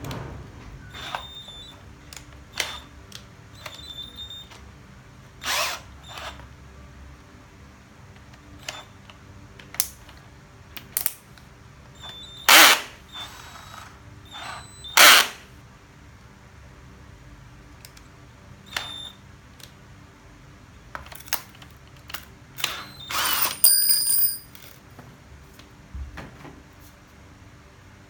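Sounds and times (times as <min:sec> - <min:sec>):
drill chuck clicks and clatter: 0:21.2 - 0:24.4.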